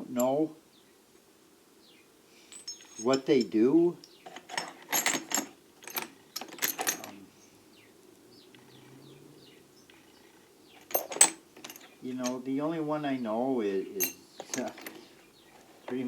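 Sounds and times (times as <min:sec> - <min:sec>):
faint bird chirps: 0:01.8 - 0:02.1, 0:07.2 - 0:10.9
metal cutter bits clinking: 0:02.5 - 0:07.2, 0:09.9 - 0:12.4, 0:13.9 - 0:15.1.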